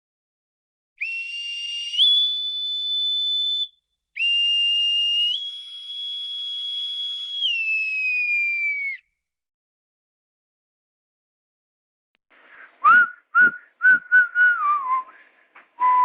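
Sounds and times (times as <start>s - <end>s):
breathy whistle tones: 1.0s - 9.1s, 12.5s - 16.0s.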